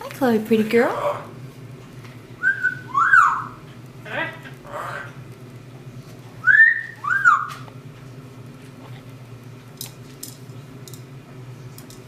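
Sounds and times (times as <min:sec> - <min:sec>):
parrot wolf whistle: 0:02.4 - 0:03.6, 0:06.4 - 0:07.7.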